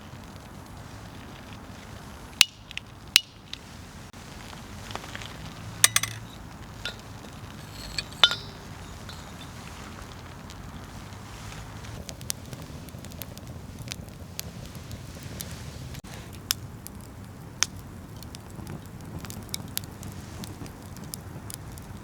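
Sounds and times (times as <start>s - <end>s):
wood campfire burning: 0.0s - 22.0s
fire pops and clicks: 4.4s - 9.7s.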